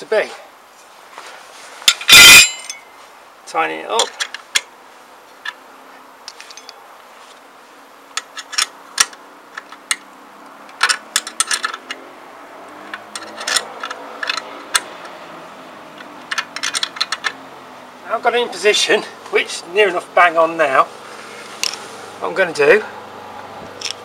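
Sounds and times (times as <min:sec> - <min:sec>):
hand tool clicking on nuts: 0:16.0 - 0:17.4.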